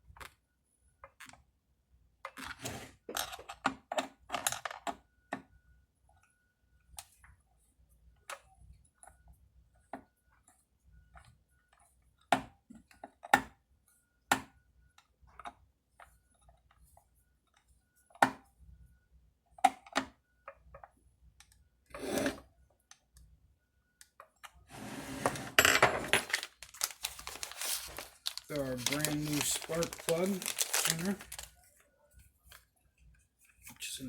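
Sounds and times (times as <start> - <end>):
packaging crinkling: 26.2 - 31.8.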